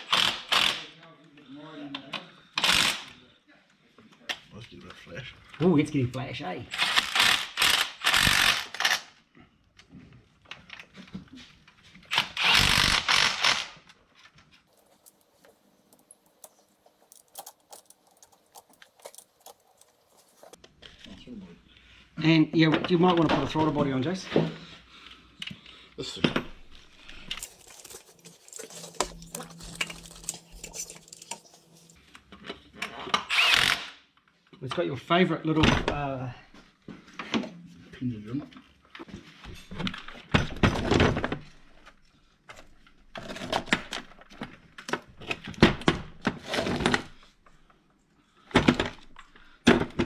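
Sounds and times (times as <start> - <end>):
handheld power tool bursts: 0.0 - 0.8, 2.6 - 3.1, 6.7 - 9.1, 12.1 - 13.8, 33.3 - 34.0
metallic clicks of parts handled: 14.7 - 20.6, 27.3 - 32.0
metallic clinks of tools: 14.7 - 20.6, 27.3 - 32.0.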